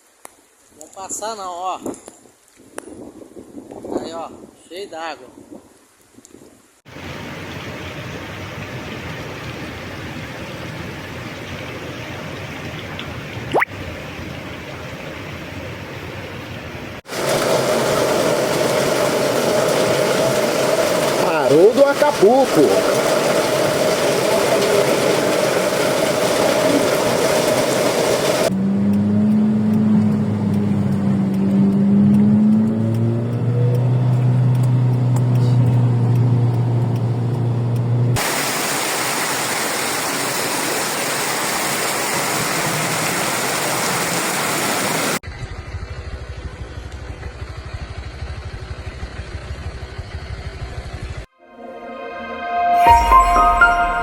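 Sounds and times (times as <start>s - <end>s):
floodwater rushing: 6.9s - 28.5s, 38.2s - 45.2s
car engine running: 17.1s - 38.2s, 45.3s - 51.2s.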